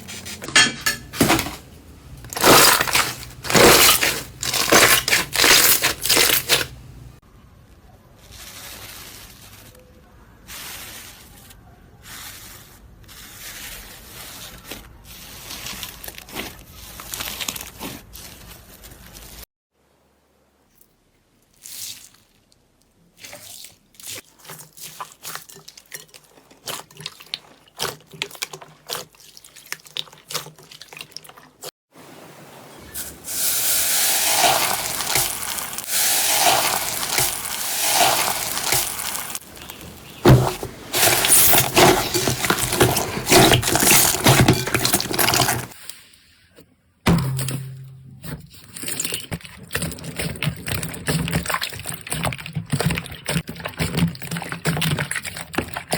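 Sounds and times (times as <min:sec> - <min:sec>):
slime crackling and popping: 0:02.2 - 0:07.0, 0:34.1 - 0:45.8
wet squelching hiss: 0:33.0 - 0:41.4.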